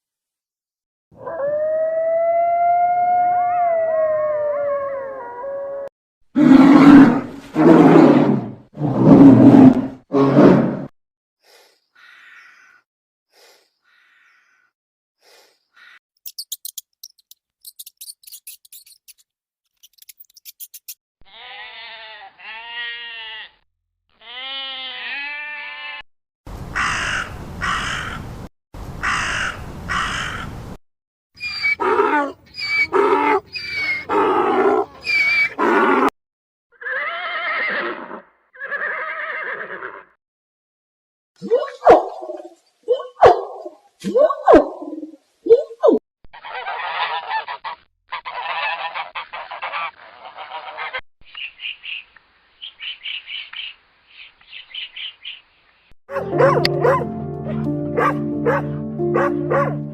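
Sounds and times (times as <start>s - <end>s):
high-pitched chirping: 16.2s - 19.2s, 19.8s - 21.0s
animal calls: 31.4s - 36.1s.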